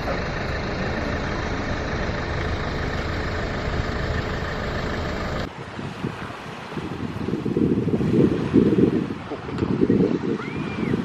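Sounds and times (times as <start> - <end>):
vehicle engine rumbling: 0.0 - 5.6.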